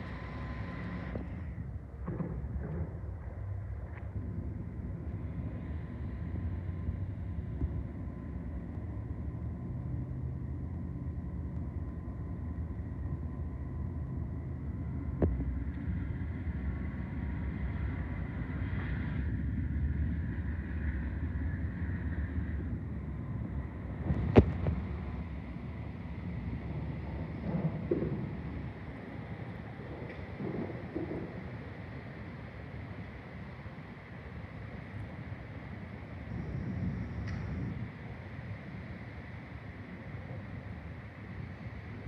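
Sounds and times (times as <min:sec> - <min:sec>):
train rumbling: 0:00.0 - 0:42.0.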